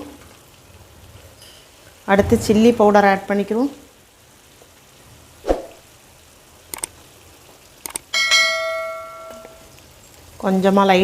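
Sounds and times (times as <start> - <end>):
small clicks: 6.7 - 7.0, 7.8 - 8.1
metal vessel ringing like a bell: 8.2 - 9.6.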